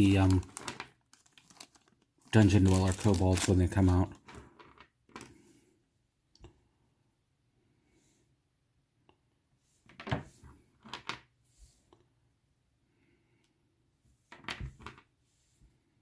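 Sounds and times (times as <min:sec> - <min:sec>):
plastic bags crinkling: 0:00.0 - 0:04.3.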